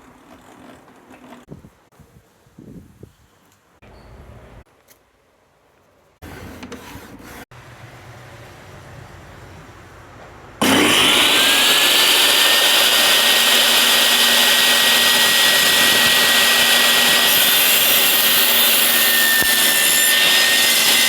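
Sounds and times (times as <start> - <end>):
table saw motor whine: 10.6 - 21.0.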